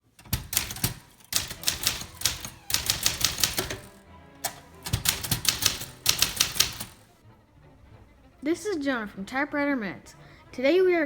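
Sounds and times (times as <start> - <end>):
typewriter key clacks: 0.1 - 7.1.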